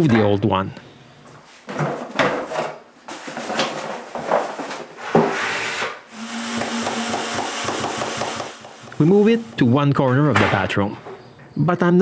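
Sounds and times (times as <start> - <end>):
power tool hum with hiss: 5.6 - 9.7.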